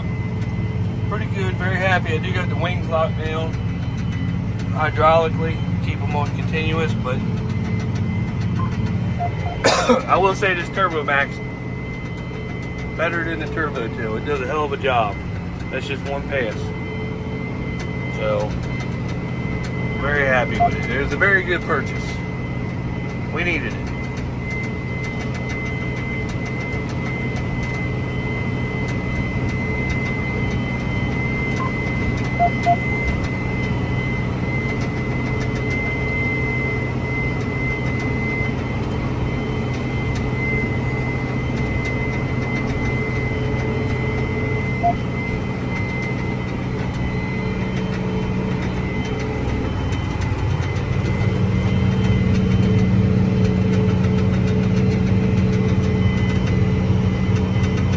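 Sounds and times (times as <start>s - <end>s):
thin steady whine: 0.0s - 57.9s
tractor diesel engine under load: 41.1s - 57.9s.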